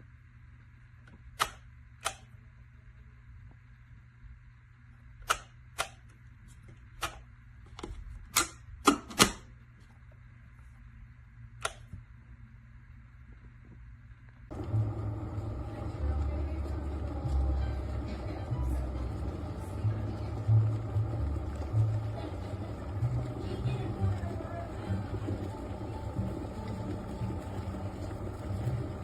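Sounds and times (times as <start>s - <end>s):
low rumbling noise: 14.5s - 29.0s.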